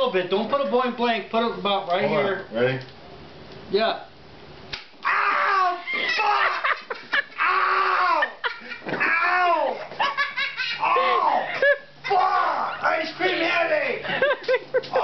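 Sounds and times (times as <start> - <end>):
people laughing hard: 5.8 - 12.8, 14.0 - 15.0.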